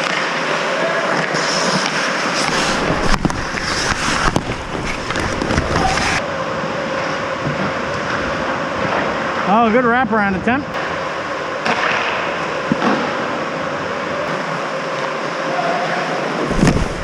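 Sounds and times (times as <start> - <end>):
skate blades scraping ice: 0.0 - 6.2
hockey stick clacks: 1.1 - 6.2, 11.6 - 13.1.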